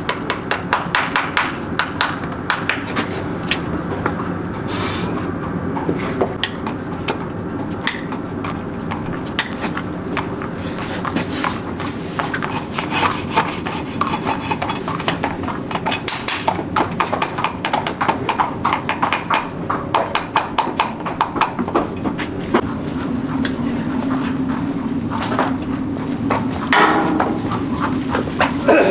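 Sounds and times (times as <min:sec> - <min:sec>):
taps and knocks on hoof: 0:06.2 - 0:22.7, 0:23.4 - 0:28.6
steady low hum: 0:20.6 - 0:28.9.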